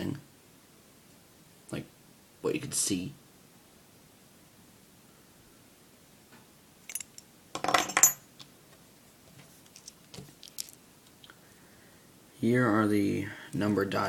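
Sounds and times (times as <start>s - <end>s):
small metal parts clinking: 6.8s - 8.5s, 9.6s - 10.8s.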